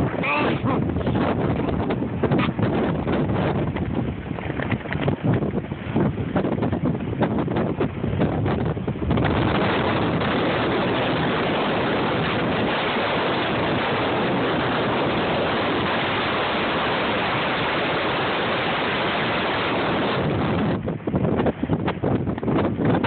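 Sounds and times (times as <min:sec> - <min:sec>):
strong wind on microphone: 0:00.0 - 0:23.0
surf: 0:00.0 - 0:23.0.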